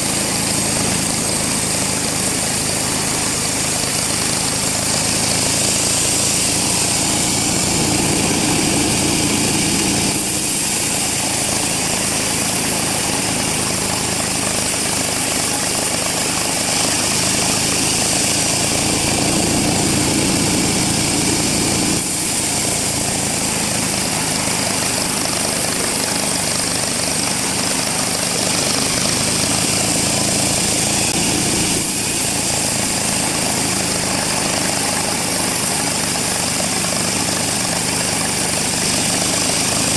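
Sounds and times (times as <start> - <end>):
band saw cutting wood: 0.0 - 39.9.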